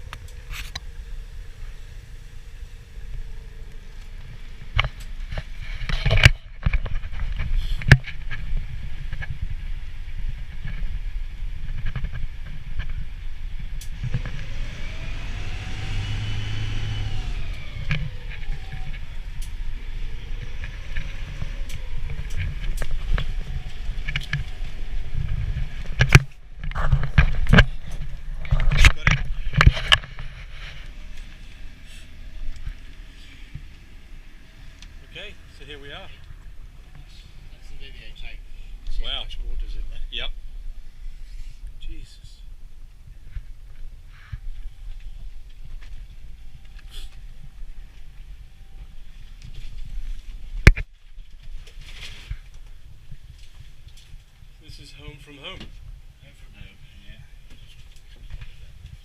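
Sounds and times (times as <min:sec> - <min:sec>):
boat engine rumbling: 0:00.0 - 0:41.3
rising and falling tone: 0:13.8 - 0:26.0.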